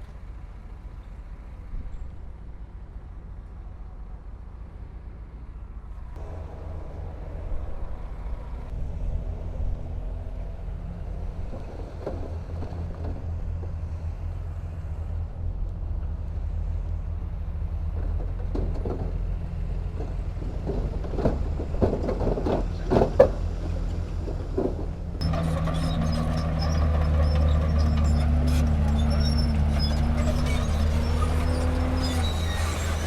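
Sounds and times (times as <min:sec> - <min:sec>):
bulldozer diesel engine: 0:00.0 - 0:33.0
tracks and blade clanking: 0:17.8 - 0:33.0.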